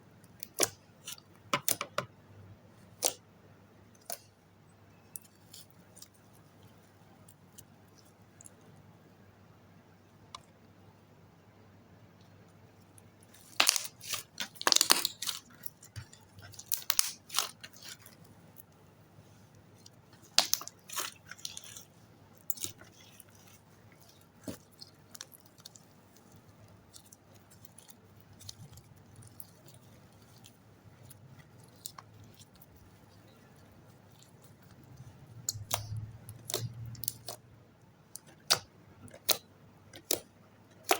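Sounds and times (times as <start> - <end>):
slime crackling and clicking: 0.2 - 1.9, 3.0 - 3.2, 13.3 - 18.8, 19.8 - 37.4, 38.1 - 40.9.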